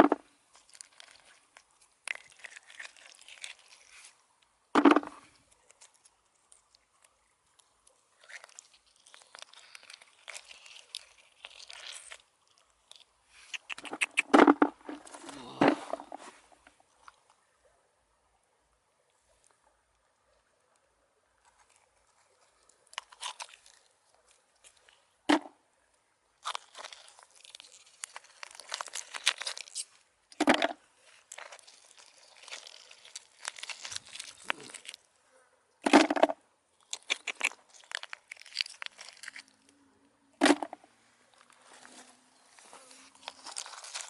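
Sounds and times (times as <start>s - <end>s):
close crunching and rustling: 0.0s - 17.2s, 21.4s - 25.1s, 26.4s - 35.2s, 36.8s - 39.8s, 40.4s - 44.0s.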